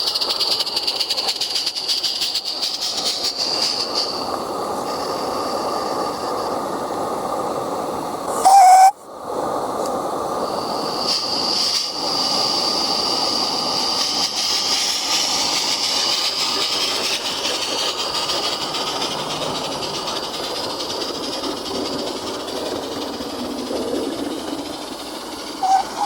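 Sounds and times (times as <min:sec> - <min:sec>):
model train hissing: 0:00.0 - 0:26.0
rolling wheel noise: 0:15.0 - 0:26.0.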